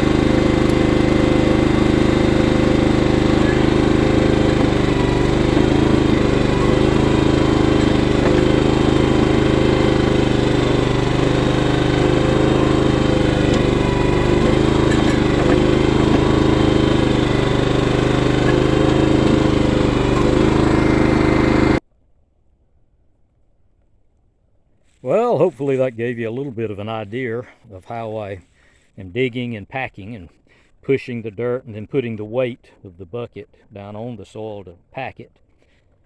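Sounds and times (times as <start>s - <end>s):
digging machine engine running: 0.0s - 21.8s.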